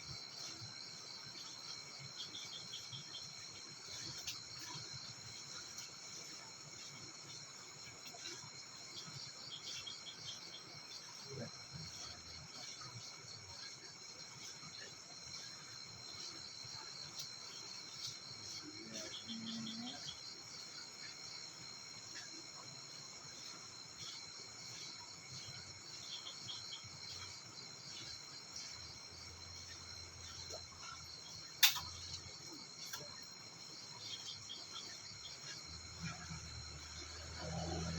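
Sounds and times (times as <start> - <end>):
insects chorus: 0.0 - 37.9.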